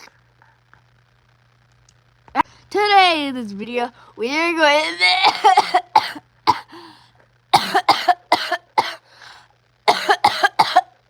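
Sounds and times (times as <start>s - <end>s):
person coughing: 5.0s - 6.9s, 7.6s - 9.0s, 9.9s - 10.9s
faint breath: 6.7s - 7.2s, 9.0s - 9.6s.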